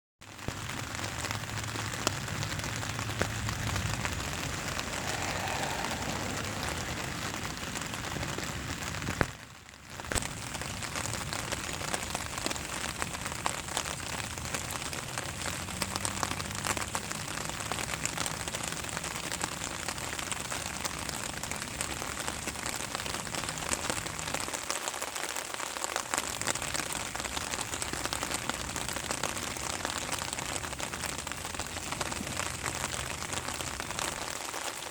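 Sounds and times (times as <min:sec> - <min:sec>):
steady rain hiss: 0:00.3 - 0:34.9.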